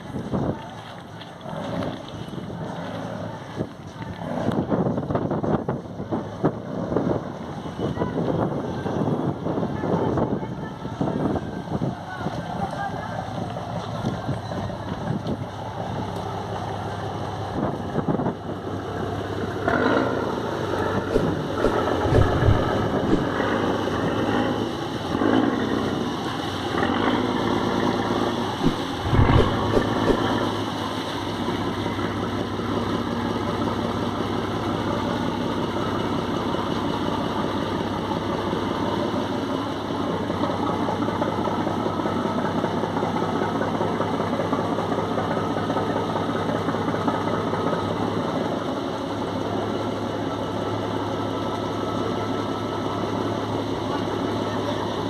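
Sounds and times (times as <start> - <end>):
boat engine running: 0.0 - 55.0
low bumps: 20.6 - 24.2, 28.4 - 30.7.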